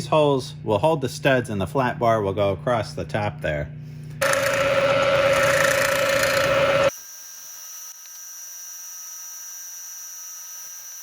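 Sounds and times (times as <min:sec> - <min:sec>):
milling machine whining: 0:04.2 - 0:06.9.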